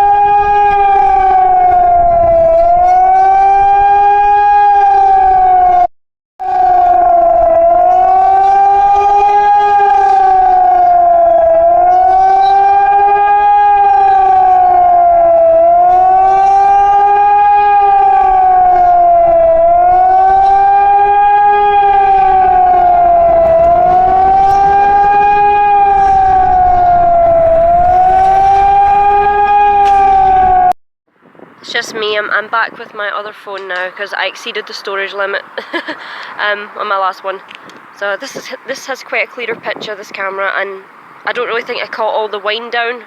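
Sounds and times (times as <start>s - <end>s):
warning siren wailing: 0.0s - 30.8s.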